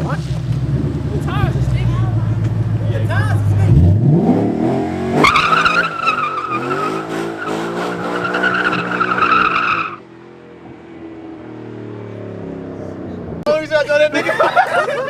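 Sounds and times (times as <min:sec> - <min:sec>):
car engine revving: 0:00.0 - 0:13.3
tyres squealing in wheelspin: 0:05.2 - 0:10.0.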